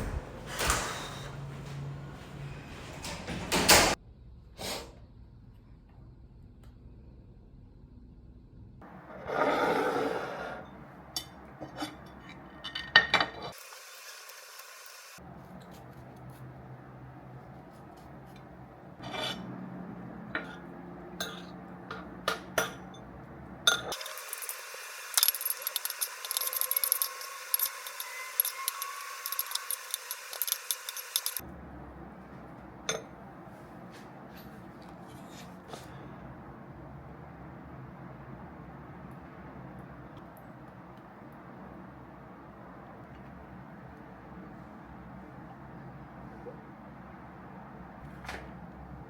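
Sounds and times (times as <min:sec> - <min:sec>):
spoon and glassware clinking: 0:23.7 - 0:24.5, 0:25.2 - 0:31.4.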